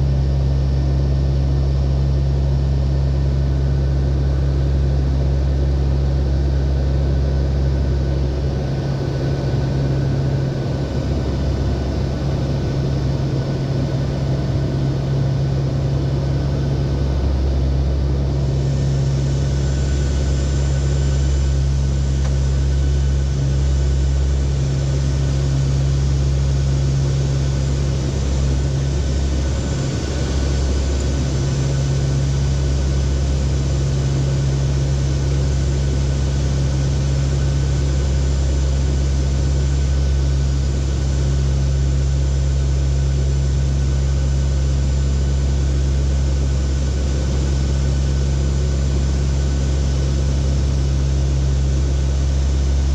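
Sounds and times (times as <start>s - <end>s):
turboprop engines droning: 0.0s - 52.9s
rushing air noise: 27.2s - 34.0s.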